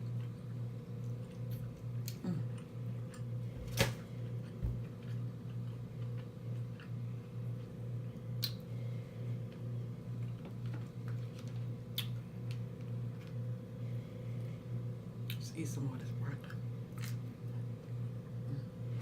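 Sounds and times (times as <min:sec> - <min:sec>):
mouth smacks while eating: 0:08.4 - 0:08.7, 0:11.9 - 0:12.2.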